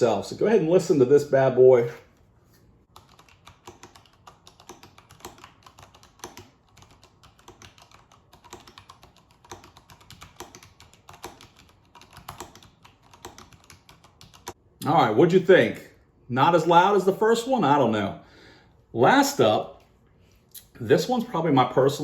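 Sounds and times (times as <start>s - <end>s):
typing on mechanical keyboard: 2.9s - 14.6s.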